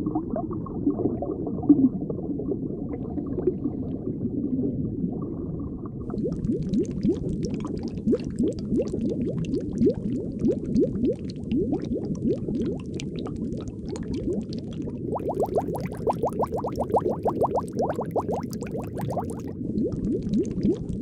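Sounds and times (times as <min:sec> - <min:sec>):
low water rumble: 0:00.0 - 0:21.0
tiny bubbles crackling: 0:06.1 - 0:21.0
rising bubble blips: 0:15.0 - 0:21.0.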